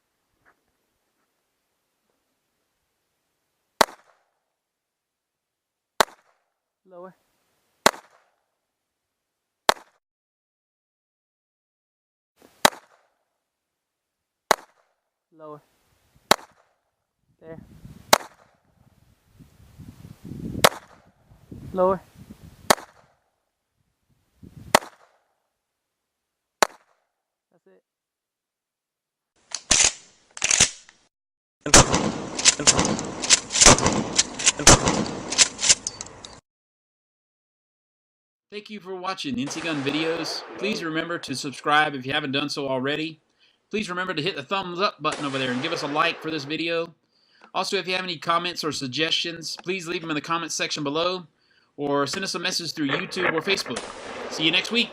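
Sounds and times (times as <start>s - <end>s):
pistol shots: 3.8s - 4.2s, 31.7s - 35.9s, 39.4s - 41.2s, 45.1s - 46.5s, 52.9s - 54.9s.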